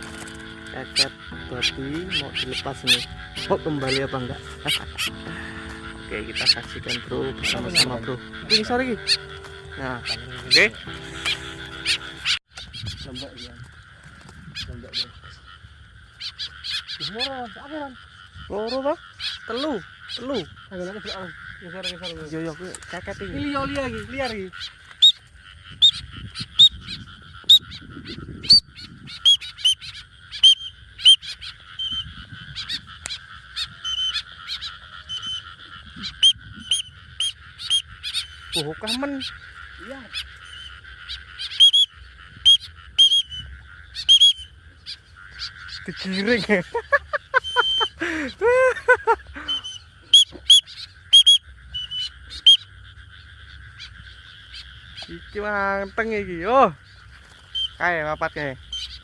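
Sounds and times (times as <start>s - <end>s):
bird calling short sharp notes: 0.0s - 12.4s
steady high hum: 0.0s - 12.4s
birds calling low arching calls: 0.0s - 59.0s
birds chirping: 0.0s - 59.0s
frog chorus: 0.0s - 59.0s.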